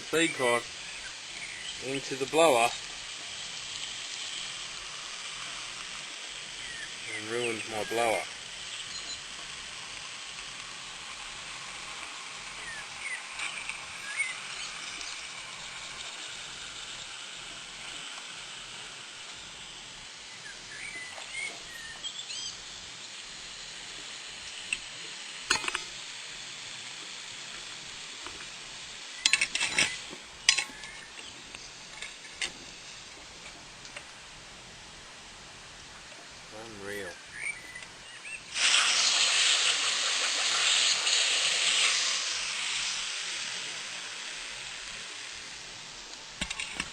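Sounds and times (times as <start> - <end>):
steady hiss: 0.0 - 46.9
metallic clinks and knocks: 25.5 - 25.9, 29.3 - 31.0, 46.4 - 46.9.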